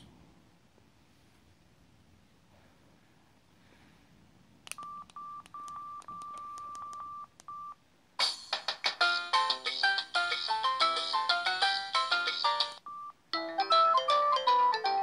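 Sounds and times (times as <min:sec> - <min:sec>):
phone key clicks with beeps: 0:04.7 - 0:07.7
polyphonic ringtone melody: 0:09.0 - 0:12.8, 0:13.4 - 0:15.0.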